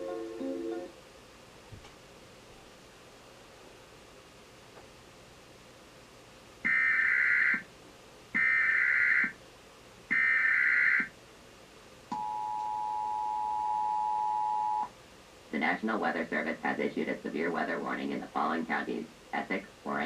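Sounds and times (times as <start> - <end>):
two-tone attention signal: 12.2 - 14.9.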